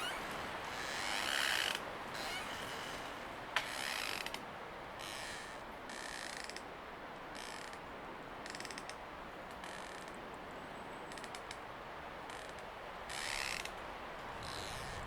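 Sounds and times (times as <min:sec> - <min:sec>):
tree wood creaking: 0:00.0 - 0:04.4, 0:05.0 - 0:06.7, 0:07.4 - 0:07.8, 0:08.4 - 0:10.2, 0:11.1 - 0:11.6, 0:12.3 - 0:15.0
wind rushing through trees: 0:00.0 - 0:15.0.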